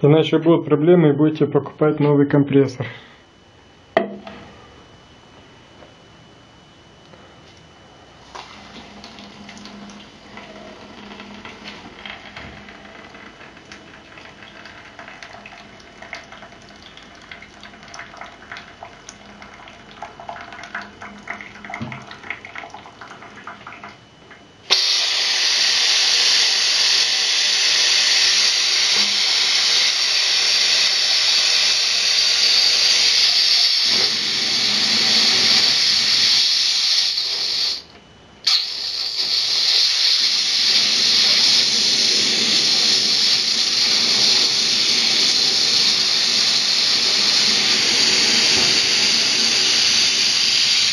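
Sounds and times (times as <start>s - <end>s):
compressed air hissing: 24.7s - 50.9s.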